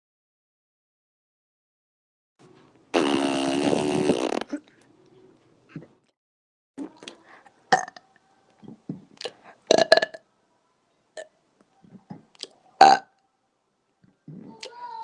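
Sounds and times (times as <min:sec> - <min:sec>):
short mouth sounds: 0:03.0 - 0:04.7
woman burping loudly: 0:07.7 - 0:08.0, 0:09.7 - 0:10.2.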